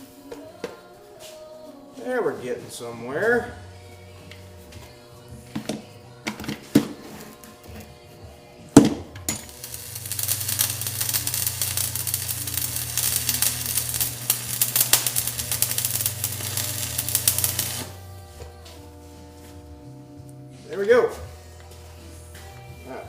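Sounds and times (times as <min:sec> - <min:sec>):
arc welding crackle: 0:09.2 - 0:18.5.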